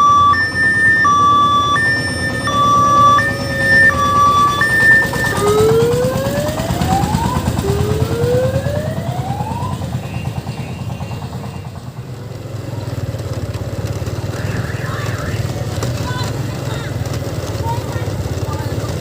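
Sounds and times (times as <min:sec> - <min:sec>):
siren sweeping upward: 0:00.0 - 0:11.8, 0:14.3 - 0:15.6
diesel engine running: 0:00.0 - 0:19.0.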